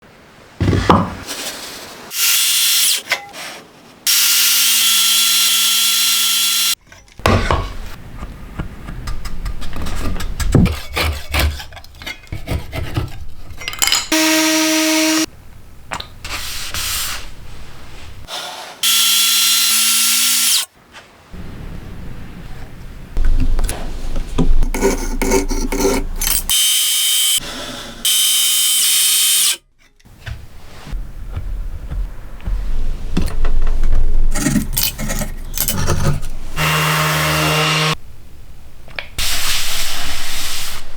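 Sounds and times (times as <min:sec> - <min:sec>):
wood knocking and scraping: 0:00.6 - 0:01.5, 0:23.2 - 0:26.4
circular saw cutting wood: 0:04.1 - 0:06.8, 0:14.1 - 0:15.3, 0:18.3 - 0:20.7, 0:24.6 - 0:29.6, 0:36.6 - 0:38.0
hand tool knocking and scraping wood: 0:07.0 - 0:13.9
circular saw running: 0:14.1 - 0:15.3.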